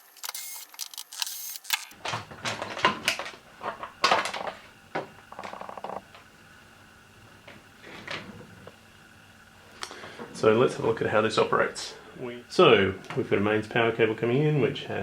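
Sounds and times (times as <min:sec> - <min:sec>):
electric screwdriver whir: 0:00.0 - 0:02.0
plastic parts clicking and knocking: 0:00.1 - 0:06.2.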